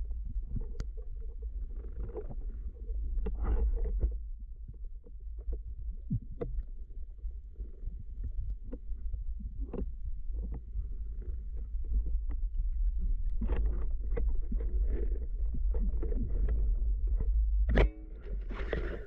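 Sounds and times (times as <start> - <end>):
underwater low rumble: 0.0 - 19.0.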